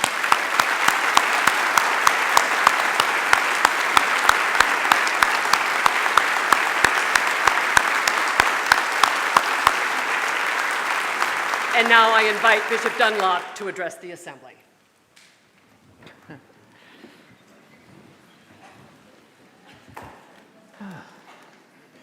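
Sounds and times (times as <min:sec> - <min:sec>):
sharp nearby hand claps: 0:00.0 - 0:13.4
audience applauding: 0:00.0 - 0:14.0.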